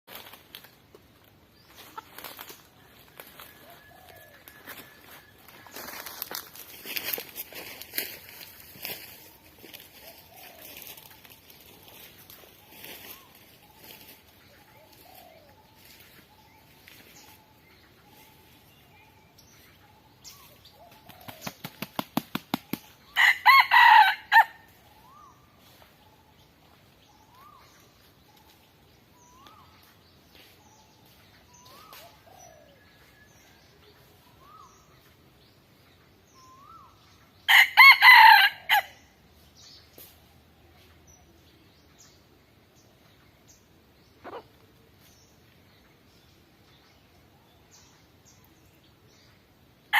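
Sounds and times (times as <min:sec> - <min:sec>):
rooster wing flaps: 0:20.9 - 0:22.9
rooster crowing: 0:23.2 - 0:24.5, 0:37.5 - 0:38.9.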